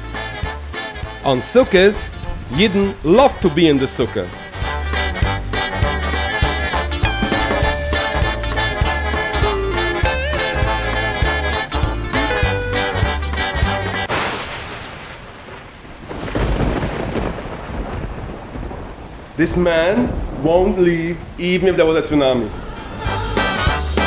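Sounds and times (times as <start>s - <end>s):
upbeat swing music: 0.0s - 14.1s, 22.7s - 24.0s.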